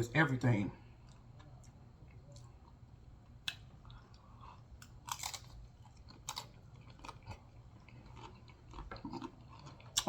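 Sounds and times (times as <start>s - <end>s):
person chewing chips: 3.5s - 10.0s
crisp crunches of chips: 4.8s - 10.0s.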